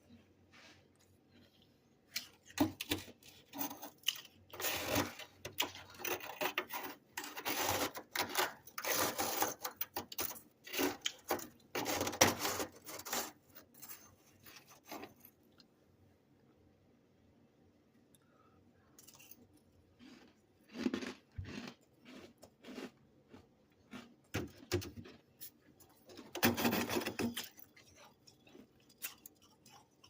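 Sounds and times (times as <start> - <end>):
freezer frost being scraped: 2.2 - 15.4, 25.0 - 29.8.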